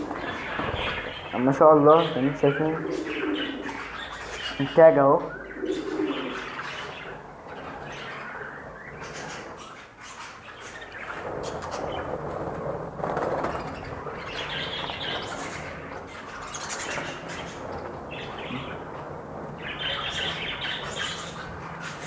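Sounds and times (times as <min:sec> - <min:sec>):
birds chirping: 0:00.0 - 0:22.0
wings flapping: 0:05.7 - 0:22.0.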